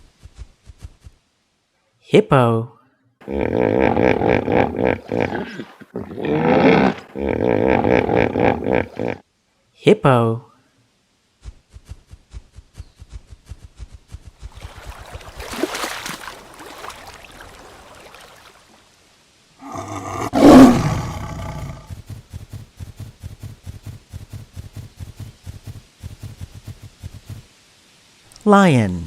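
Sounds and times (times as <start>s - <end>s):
hippopotamus bellowing roars: 3.2s - 9.2s, 19.6s - 21.9s
hippopotamus grunting: 3.2s - 9.2s, 19.6s - 22.0s.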